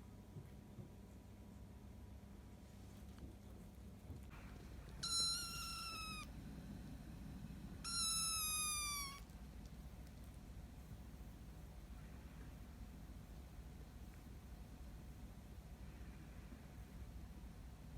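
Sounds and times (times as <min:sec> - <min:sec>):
kitten meowing: 0:05.0 - 0:06.3, 0:07.8 - 0:09.3.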